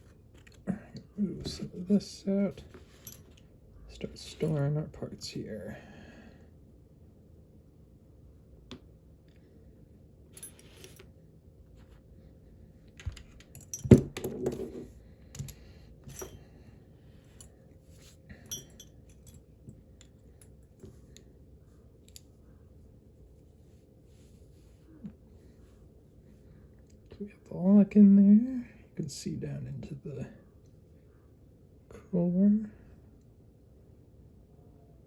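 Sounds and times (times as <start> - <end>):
small metal parts clicking: 15.3 - 16.5, 18.4 - 19.4.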